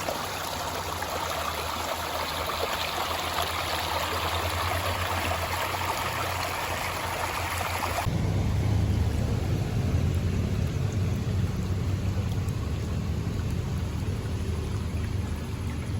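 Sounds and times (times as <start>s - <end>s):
river water flowing and splashing: 0.0s - 15.9s
deep rumble: 8.0s - 15.9s.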